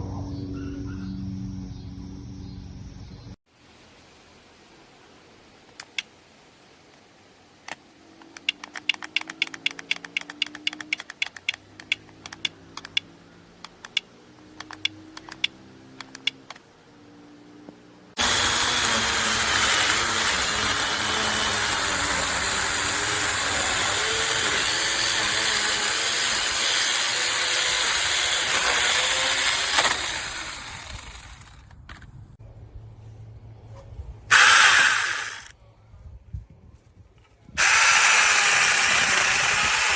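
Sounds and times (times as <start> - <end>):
faint rapid clicking: 7.6 - 16.6
mini chainsaw running: 8.5 - 11.2, 18.2 - 31.7, 34.3 - 35.5, 37.6 - 39.9.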